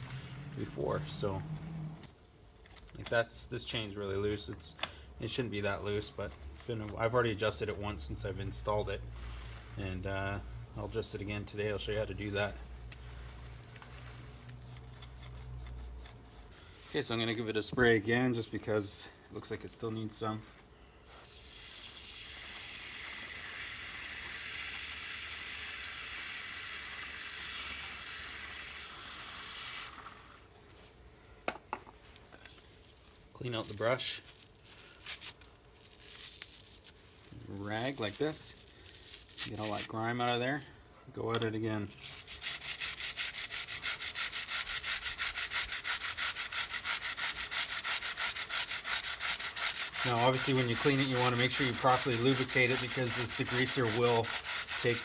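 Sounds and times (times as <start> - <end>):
brush scrubbing a chain: 8.1 - 17.4, 32.8 - 40.1, 41.9 - 55.0
aerosol can spraying hiss: 21.0 - 28.1.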